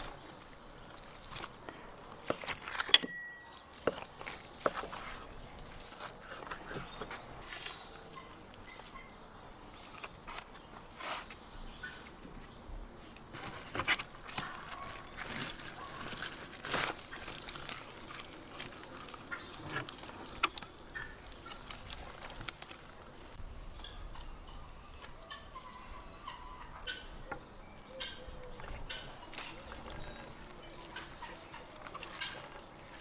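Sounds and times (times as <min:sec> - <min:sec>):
insect buzzing: 0:07.4 - 0:33.0.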